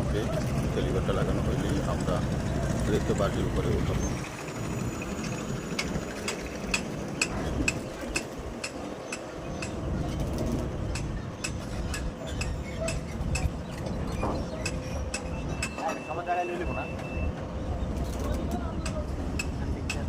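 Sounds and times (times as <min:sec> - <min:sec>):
sharp metallic clicks: 0:05.2 - 0:14.0.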